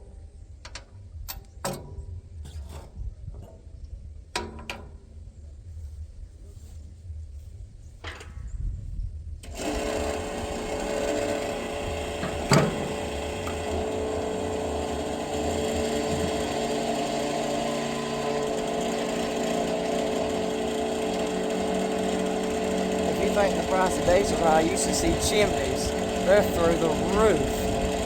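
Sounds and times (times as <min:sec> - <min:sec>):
electric fuel pump humming: 0:09.4 - 0:28.0.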